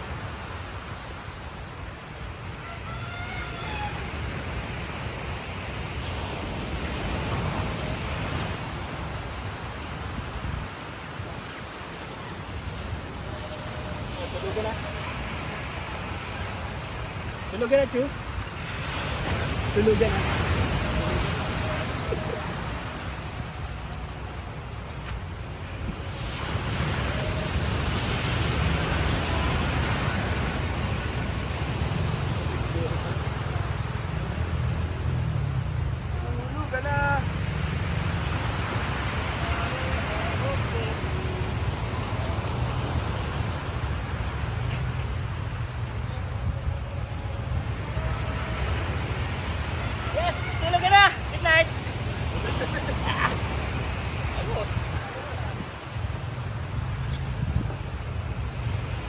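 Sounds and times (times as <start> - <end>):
ocean waves washing: 0.0 - 59.0.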